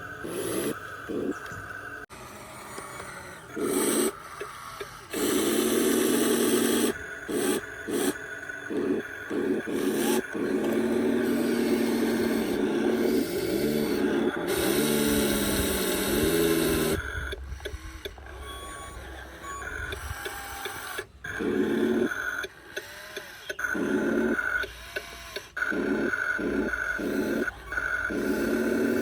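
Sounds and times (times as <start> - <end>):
short motor whirs: 0.0 - 29.0
small electric motors whining: 0.0 - 29.0.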